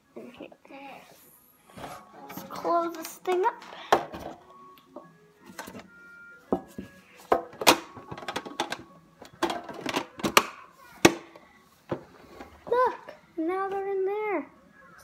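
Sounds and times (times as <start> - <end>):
plastic toy clicks and knocks: 7.4 - 11.4.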